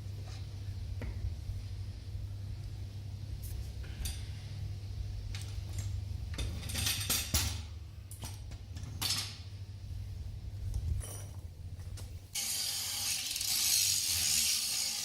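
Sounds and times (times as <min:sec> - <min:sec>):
metal tools clinking: 0:10.8 - 0:12.1.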